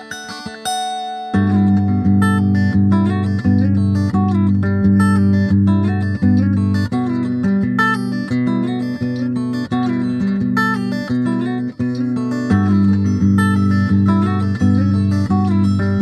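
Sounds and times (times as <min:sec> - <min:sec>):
guitar music: 0:00.0 - 0:16.0
low bass line: 0:01.4 - 0:07.2, 0:12.5 - 0:16.0.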